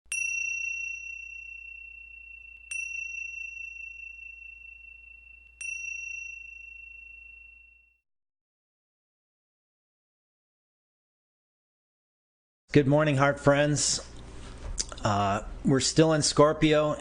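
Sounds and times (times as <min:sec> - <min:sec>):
small bell ringing: 0:00.1 - 0:08.0.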